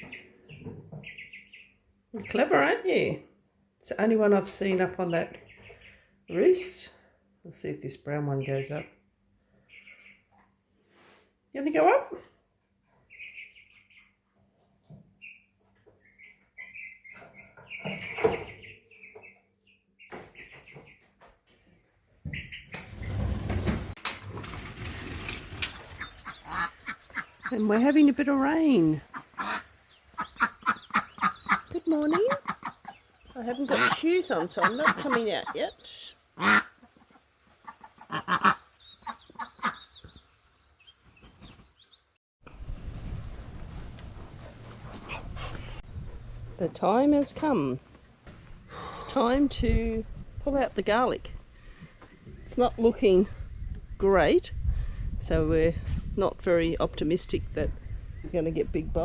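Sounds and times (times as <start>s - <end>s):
poultry calling: 0.0s - 1.7s, 9.6s - 10.4s, 13.0s - 14.2s, 24.6s - 42.1s
chicks cheeping: 0.0s - 2.4s, 5.1s - 6.8s, 9.6s - 10.4s, 13.0s - 14.3s, 15.2s - 21.1s, 22.2s - 23.4s, 24.2s - 42.1s
noisy outdoor background: 0.0s - 59.0s.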